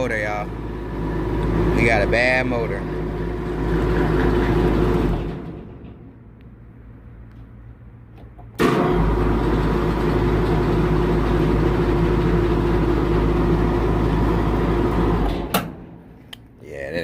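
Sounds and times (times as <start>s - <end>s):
fan motor running with whine: 0.0s - 6.0s, 8.6s - 16.1s.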